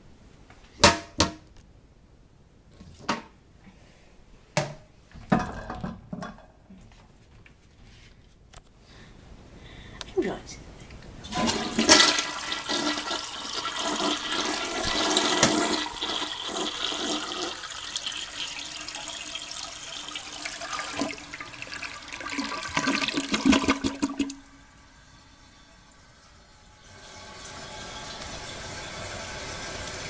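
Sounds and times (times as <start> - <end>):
toilet flushing: 11.2 - 30.0.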